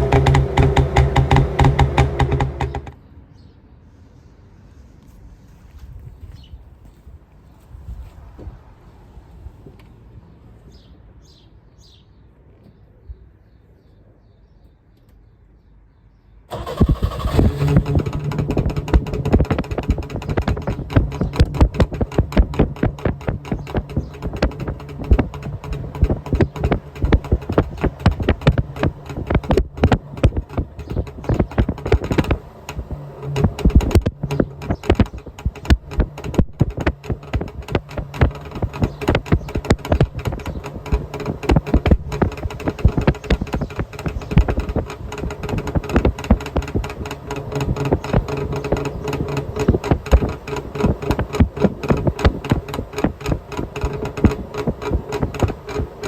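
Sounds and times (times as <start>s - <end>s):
two-stroke exhaust popping: 0.0s - 3.0s, 16.5s - 56.0s.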